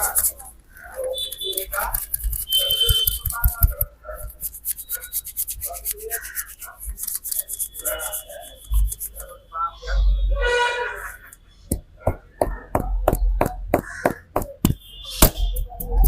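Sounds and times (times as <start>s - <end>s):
hands rubbing hair: 0.0s - 9.3s
dull pats: 1.7s - 9.2s, 11.7s - 16.0s.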